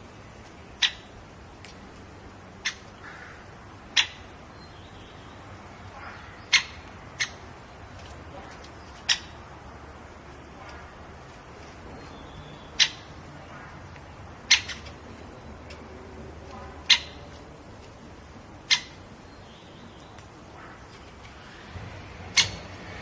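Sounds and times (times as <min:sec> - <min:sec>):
bird call notes: 0:08.8 - 0:09.4, 0:12.0 - 0:15.8, 0:16.5 - 0:17.3, 0:22.3 - 0:22.8.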